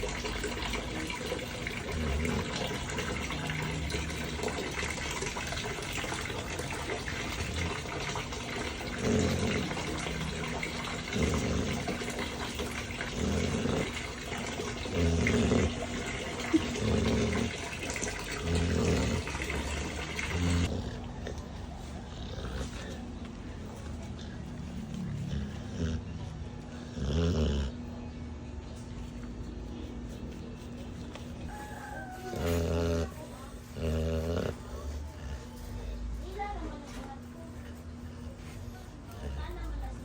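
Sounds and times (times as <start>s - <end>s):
dog snoring: 1.8s - 4.5s, 8.7s - 21.1s, 22.1s - 23.0s, 24.2s - 27.9s, 31.7s - 35.6s.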